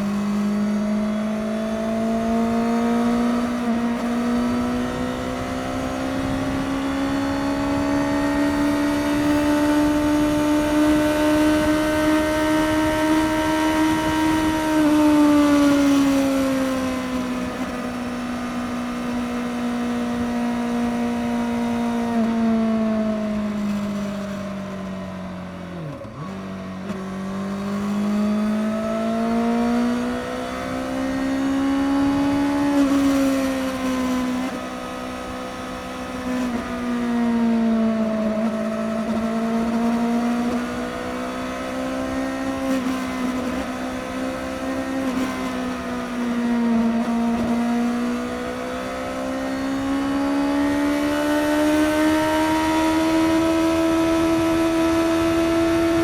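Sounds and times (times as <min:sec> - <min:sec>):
motorcycle engine at speed: 0:00.0 - 0:56.0
wind noise: 0:03.6 - 0:16.3.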